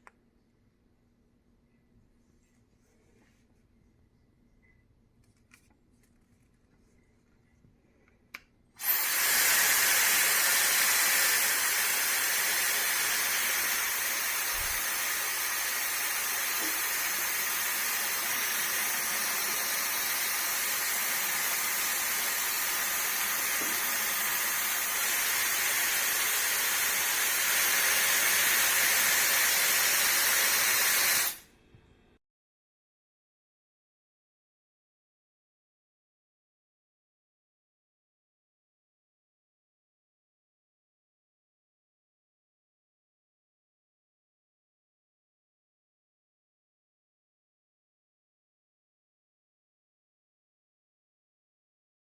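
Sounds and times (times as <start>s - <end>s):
hair dryer blowing: 8.8s - 31.4s.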